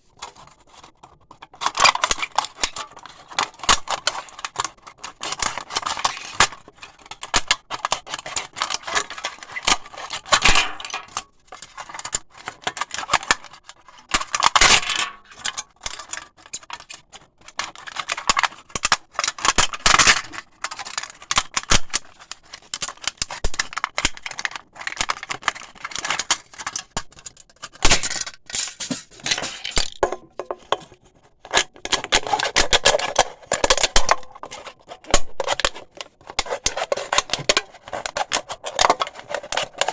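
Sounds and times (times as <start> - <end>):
razor blade cutting aluminium cans: 10.3 - 11.2, 31.5 - 39.9.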